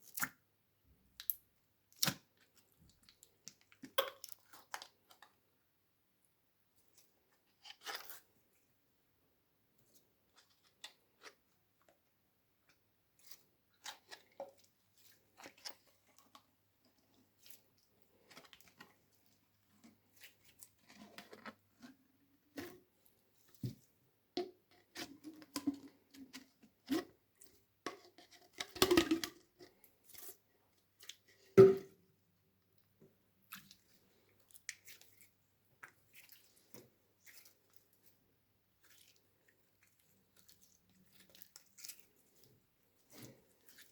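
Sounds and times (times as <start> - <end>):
slime squishing by hand: 38.7 - 43.9.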